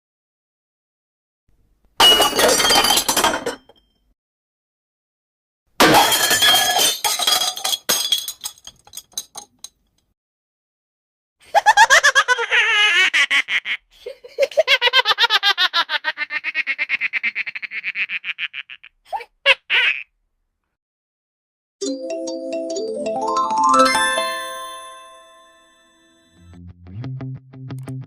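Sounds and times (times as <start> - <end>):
glass shattering with tinkling shards: 2.0 - 3.7, 5.9 - 9.4.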